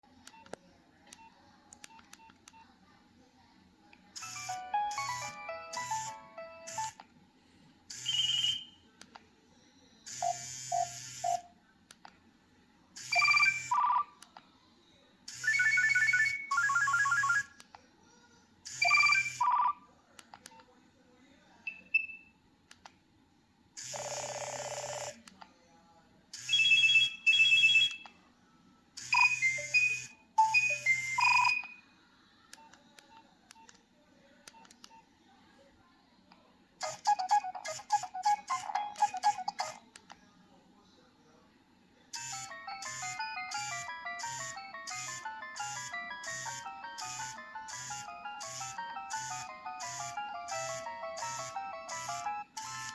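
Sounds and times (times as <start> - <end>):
phone playing electronic jingles: 4.2 - 7.0, 36.8 - 39.8, 42.2 - 52.9.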